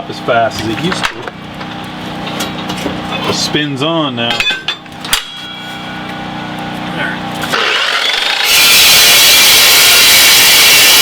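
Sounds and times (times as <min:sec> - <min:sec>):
chop saw motor hum: 0:07.4 - 0:11.0
saw blade cutting steel: 0:07.5 - 0:11.0.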